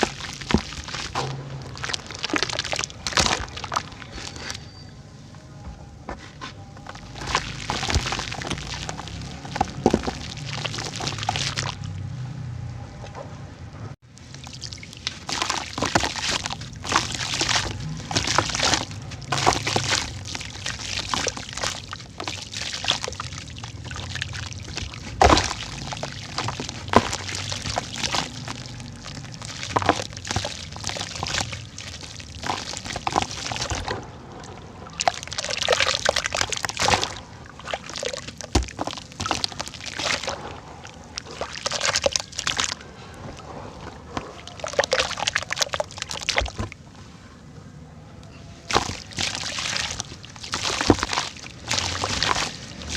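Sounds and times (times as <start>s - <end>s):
dirt crumbling with cracks and pops: 0.0s - 4.7s, 6.2s - 12.0s, 14.2s - 46.8s, 48.3s - 52.9s
water sloshing and pouring: 0.0s - 4.8s, 6.8s - 12.3s, 14.1s - 47.2s, 48.6s - 52.9s.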